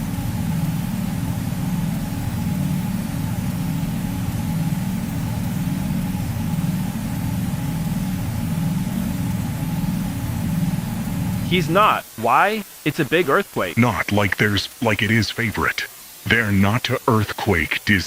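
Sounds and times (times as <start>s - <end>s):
low droning rumble: 0.0s - 12.2s.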